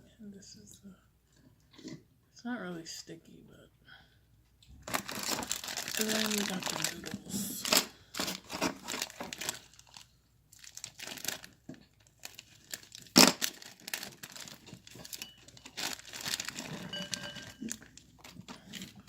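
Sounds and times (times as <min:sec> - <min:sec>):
plastic packaging crinkling: 0:04.8 - 0:19.0.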